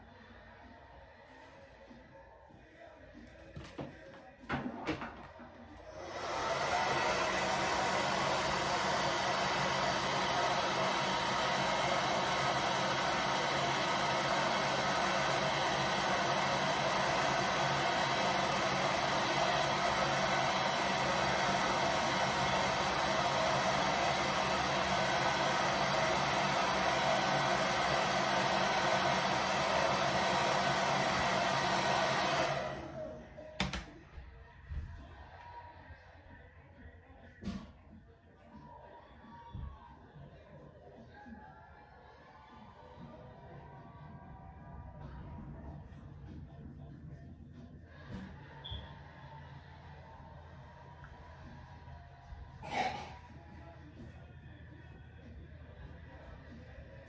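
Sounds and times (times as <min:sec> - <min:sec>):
hair dryer running: 0:05.8 - 0:33.9.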